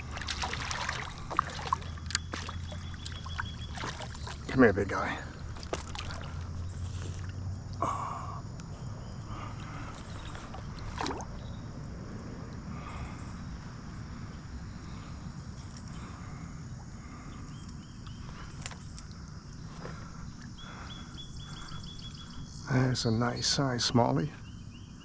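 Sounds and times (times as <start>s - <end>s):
sharp splashes: 0.0s - 7.5s, 9.5s - 11.4s
creek water flowing: 0.0s - 13.0s.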